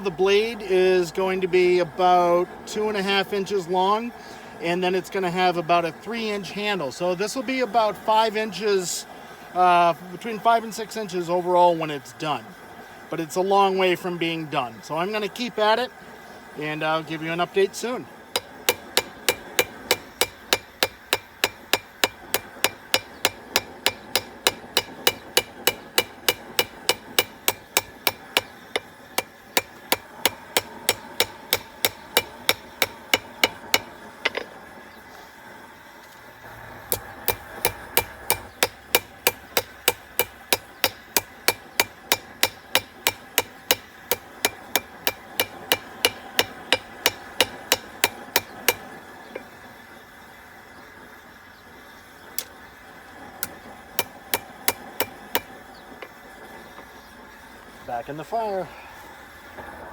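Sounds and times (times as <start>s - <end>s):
hammer striking steel on anvil: 18.3s - 34.5s, 36.9s - 49.0s, 53.4s - 56.1s.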